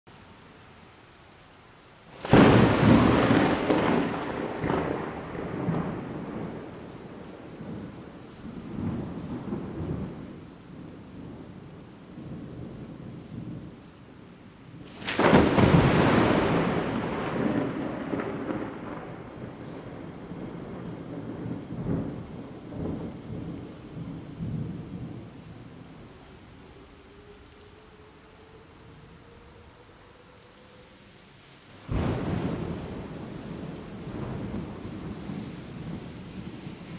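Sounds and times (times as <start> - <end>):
thunder rumbling: 2.1 - 31.0, 31.8 - 36.9
sharp lightning crack: 2.2 - 7.7, 14.9 - 22.1.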